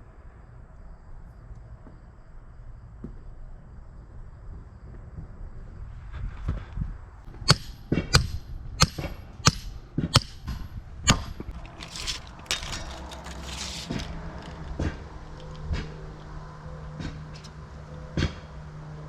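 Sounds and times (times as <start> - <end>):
low engine hum: 7.0 - 19.0
hand tool striking ground: 7.5 - 10.4, 11.1 - 16.0
scraping: 11.4 - 17.8.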